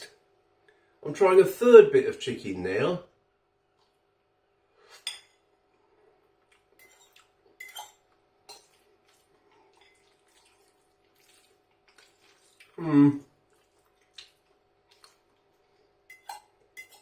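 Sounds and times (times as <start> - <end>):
cutlery clinking against bowl: 4.9 - 5.4, 6.8 - 8.8, 16.1 - 17.0.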